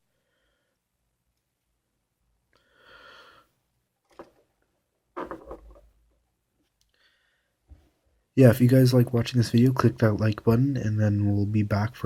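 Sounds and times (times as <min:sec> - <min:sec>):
rustling thump: 0:05.2 - 0:06.0.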